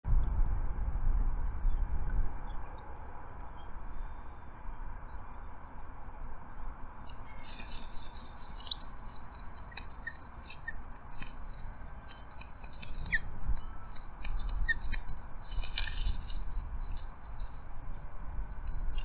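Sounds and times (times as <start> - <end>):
low rumble: 0.0 - 5.3
faint high bird chirps: 7.0 - 17.6
sticks crackling and scratching: 7.0 - 19.0.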